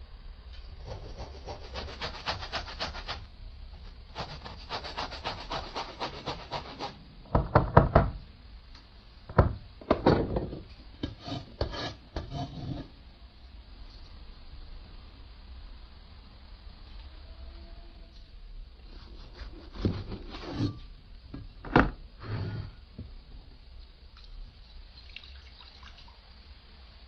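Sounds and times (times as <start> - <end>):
scraping strokes on wood: 0.8 - 3.3, 4.1 - 7.0, 11.0 - 12.9, 18.9 - 20.8
loud knocks: 7.3 - 8.2.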